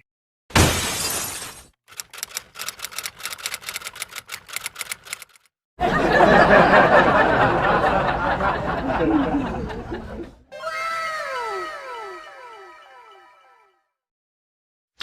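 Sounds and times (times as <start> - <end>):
rapid clicking: 1.9 - 5.5
group laughter: 5.8 - 10.4.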